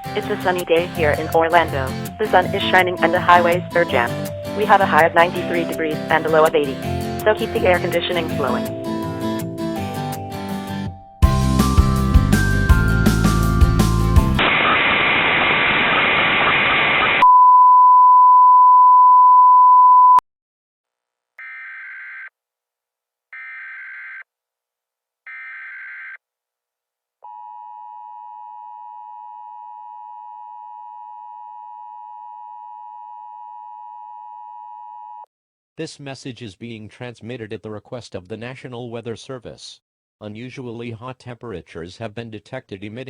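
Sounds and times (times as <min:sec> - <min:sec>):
steady high tone: 0:00.0 - 0:10.5
hissing static: 0:14.2 - 0:17.2.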